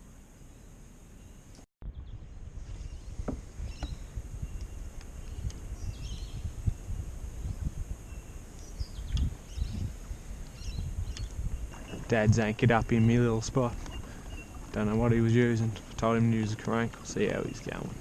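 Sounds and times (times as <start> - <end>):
bird chirps: 2.8 - 6.5, 7.4 - 14.8
river rumble: 3.1 - 18.0.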